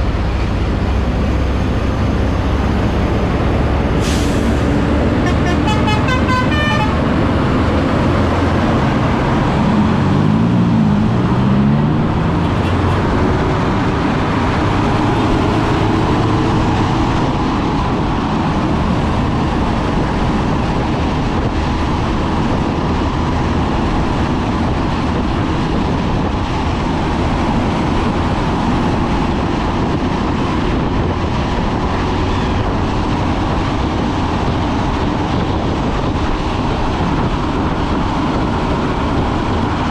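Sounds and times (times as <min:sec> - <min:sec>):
bus engine and road noise: 0:00.0 - 0:39.9
low alternating horn tone: 0:05.1 - 0:07.2
warbling bus horn: 0:05.1 - 0:07.2, 0:12.4 - 0:13.1.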